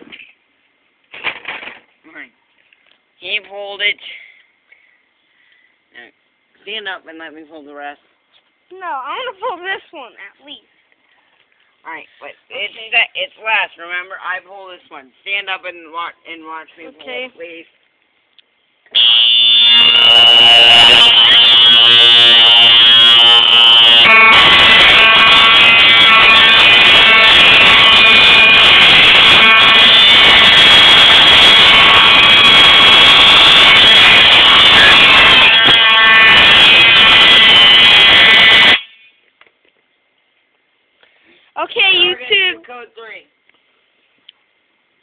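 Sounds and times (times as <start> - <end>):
fire alarm horns: 18.9 - 39.1.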